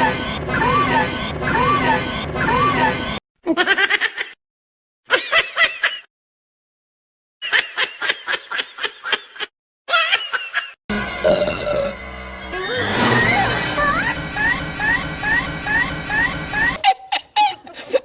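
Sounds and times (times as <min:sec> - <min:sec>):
background music: 0:10.9 - 0:16.2.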